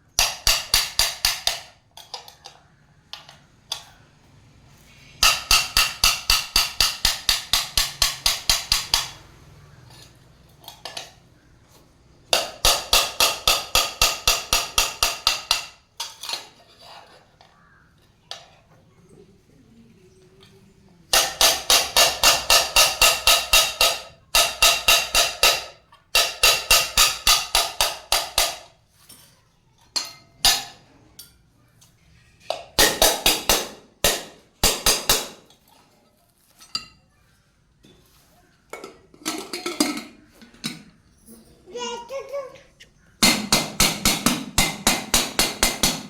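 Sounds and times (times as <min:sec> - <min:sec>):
hammer striking metal: 0:05.2 - 0:09.2, 0:21.1 - 0:28.7, 0:32.8 - 0:35.5, 0:43.2 - 0:46.0.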